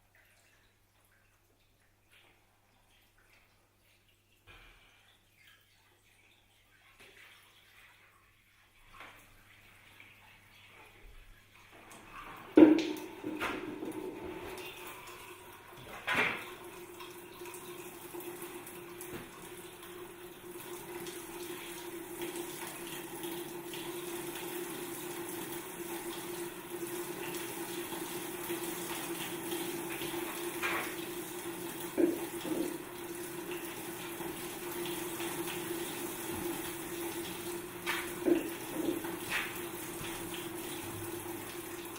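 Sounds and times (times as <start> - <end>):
water trickling: 0.0 - 41.9
low pump hum: 28.9 - 41.9.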